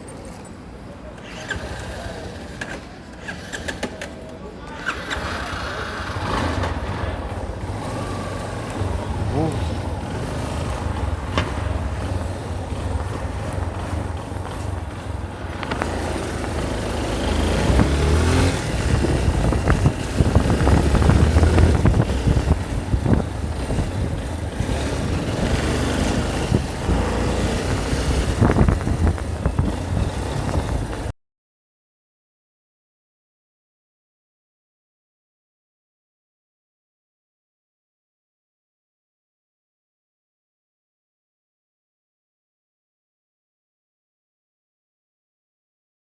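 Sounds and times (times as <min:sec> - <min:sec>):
vehicle engine rumbling: 0:06.0 - 0:31.1.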